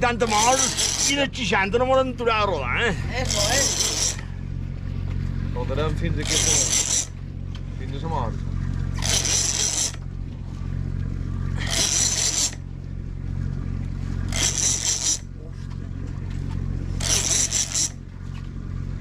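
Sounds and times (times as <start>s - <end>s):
boat engine humming: 0.0s - 19.0s
fishing reel cranking: 0.2s - 1.3s, 3.2s - 4.3s, 6.2s - 7.2s, 9.0s - 10.0s, 11.6s - 12.6s, 14.3s - 15.3s, 17.0s - 18.0s.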